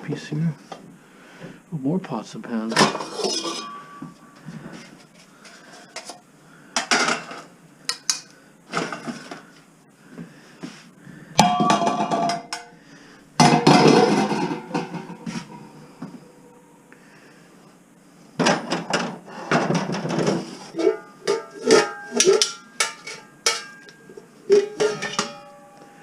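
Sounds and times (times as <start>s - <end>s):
metal pots and pans clattering: 2.7s - 4.9s, 6.8s - 9.4s, 11.4s - 12.7s, 13.4s - 16.1s, 18.4s - 26.0s.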